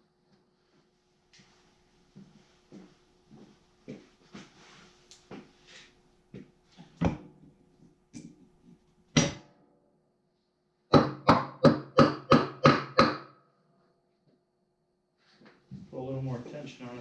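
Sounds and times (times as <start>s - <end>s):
hammer striking wood block: 9.2s - 9.5s, 10.9s - 13.4s.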